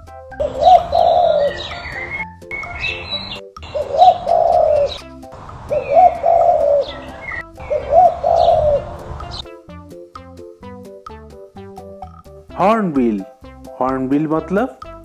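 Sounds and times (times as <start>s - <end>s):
dove cooing: 0.4s - 9.4s
high bird chirps: 0.4s - 9.5s.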